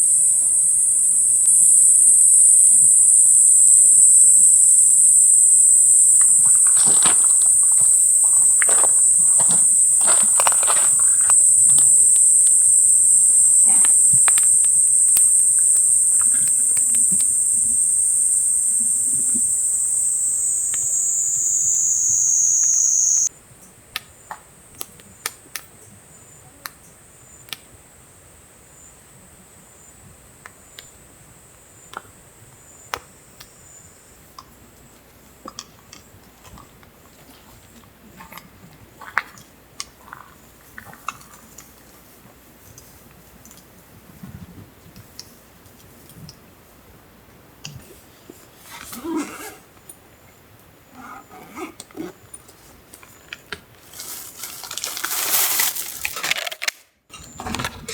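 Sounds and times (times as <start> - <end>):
faint insect chirps: 0.0 - 24.3, 26.0 - 34.4
insect chorus drone: 0.0 - 25.2, 25.9 - 35.0.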